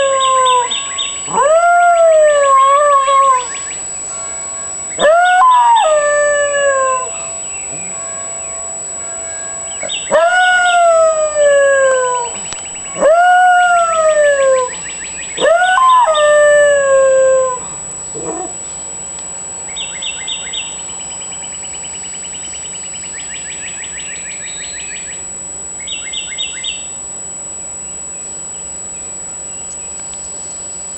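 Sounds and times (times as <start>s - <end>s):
dog howling: 0.0s - 3.6s, 4.9s - 8.0s, 9.8s - 18.6s
rapid bird trills: 19.7s - 25.2s.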